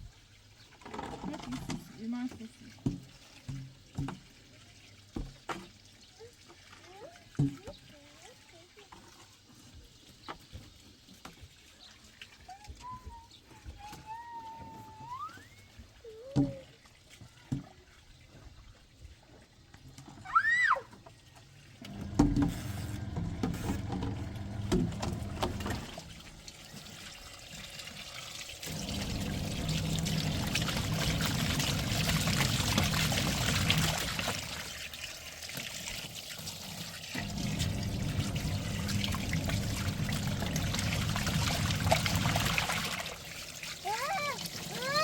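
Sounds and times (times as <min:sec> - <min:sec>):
water sloshing and trickling: 0:00.0 - 0:45.0
washing machine motor humming: 0:21.8 - 0:45.0.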